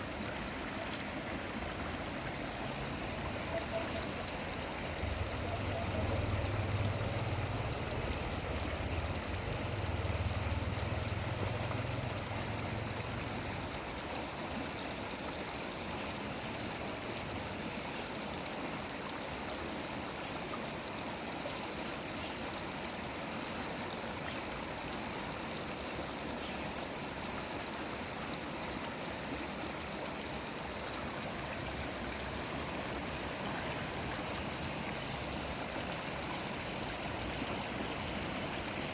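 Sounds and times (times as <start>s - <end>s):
stream of water flowing: 0.0s - 38.9s.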